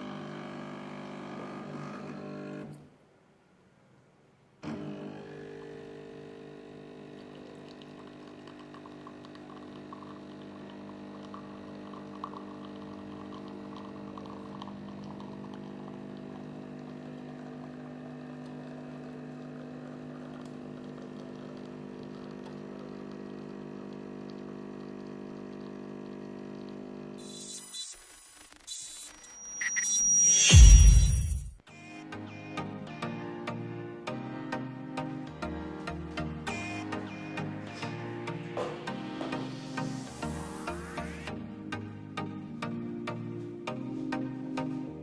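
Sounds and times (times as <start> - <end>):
espresso machine pump buzzing: 0.0 - 2.8, 4.6 - 28.4.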